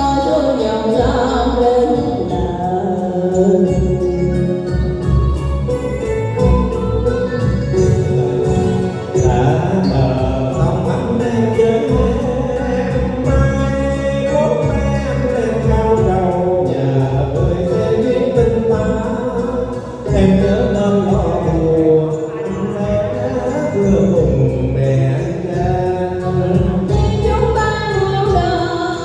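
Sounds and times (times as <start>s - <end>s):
instrumental accompaniment: 0.0s - 29.0s
person singing with wavering pitch: 7.4s - 29.0s.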